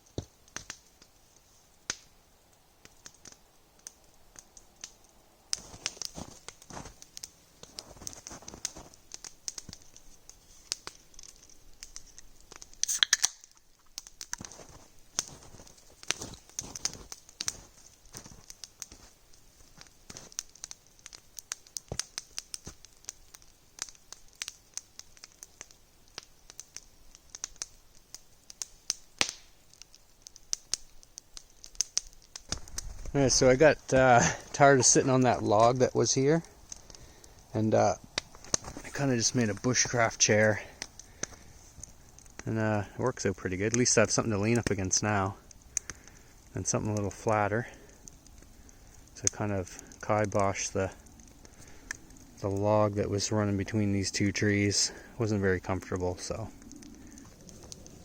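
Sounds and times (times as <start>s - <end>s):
campfire crackling and popping: 0.0s - 58.0s.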